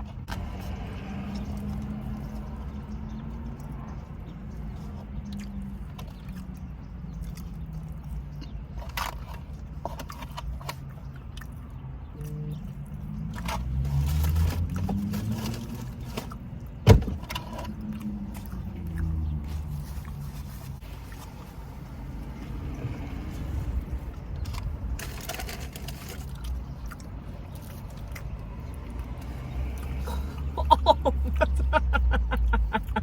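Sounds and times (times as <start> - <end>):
car engine idling: 28.8 - 33.0.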